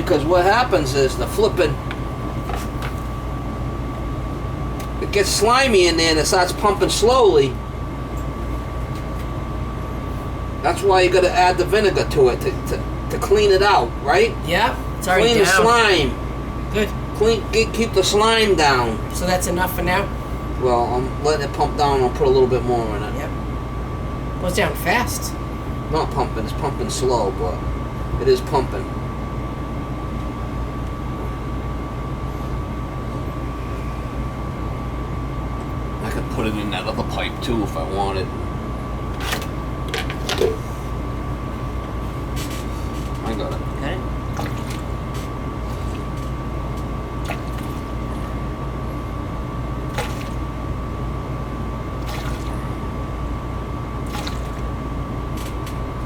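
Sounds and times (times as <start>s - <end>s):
gas furnace rumbling: 0.0s - 56.0s
thin constant whine: 0.0s - 56.0s
liquid pouring through funnel: 49.9s - 50.4s, 52.0s - 52.7s, 54.0s - 54.8s.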